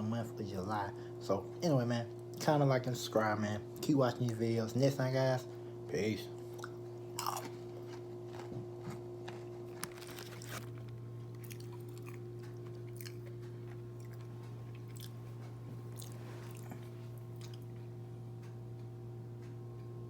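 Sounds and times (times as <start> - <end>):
steady low hum: 0.0 - 20.0
person chewing crunchy food: 6.4 - 17.8.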